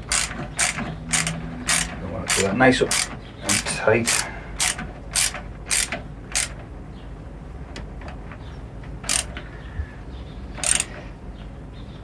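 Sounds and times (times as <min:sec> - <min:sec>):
ratchet wrench clicking: 0:00.1 - 0:06.6, 0:09.0 - 0:09.4, 0:10.6 - 0:10.9.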